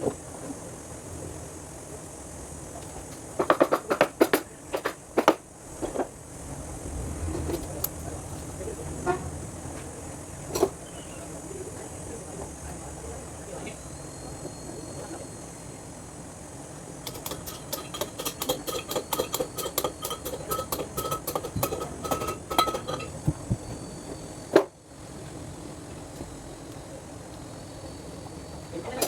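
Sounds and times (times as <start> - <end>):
fast metallic clicking: 17.0 - 23.3.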